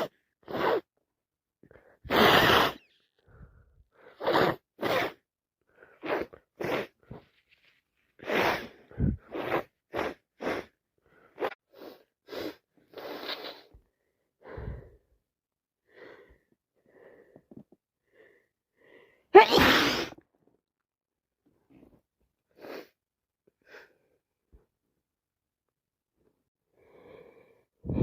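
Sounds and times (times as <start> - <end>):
person breathing: 3.2 - 4.2, 8.6 - 9.3, 10.6 - 15.2, 15.8 - 19.3, 26.7 - 28.0
person sneezing: 19.4 - 20.2.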